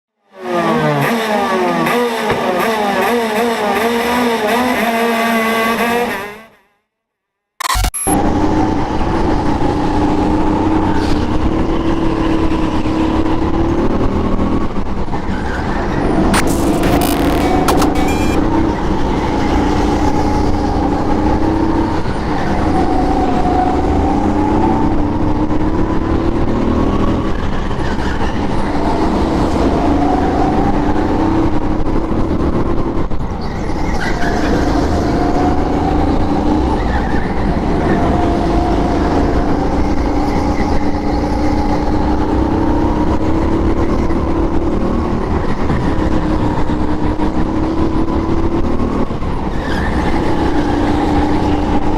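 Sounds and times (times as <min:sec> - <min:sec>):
go-kart engine at full throttle: 0:00.2 - 0:06.6, 0:08.2 - 0:51.9.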